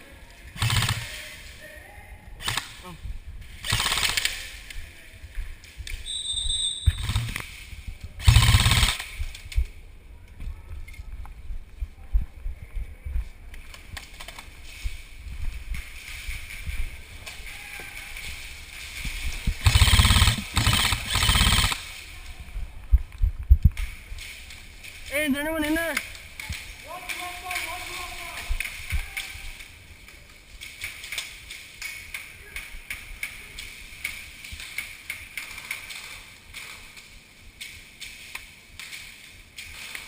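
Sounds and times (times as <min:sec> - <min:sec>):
airsoft rifle full-auto bursts: 0:00.6 - 0:01.2, 0:02.4 - 0:02.8, 0:03.6 - 0:04.4, 0:06.9 - 0:07.4, 0:08.2 - 0:09.2, 0:19.6 - 0:21.9
handling and movement noise: 0:09.0 - 0:21.2.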